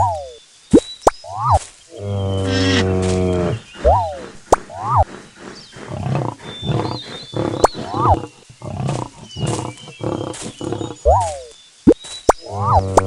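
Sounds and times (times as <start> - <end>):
big cat roaring and growling: 5.8 - 11.0.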